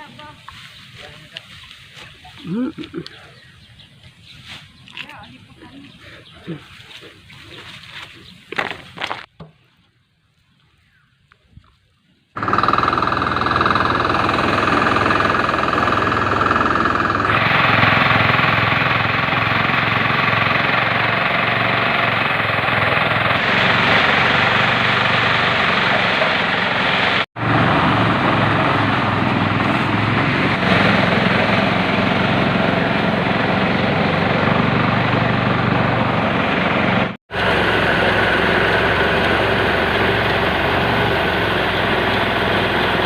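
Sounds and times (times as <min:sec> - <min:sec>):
engine running with low pulse: 0:12.4 - 0:43.0.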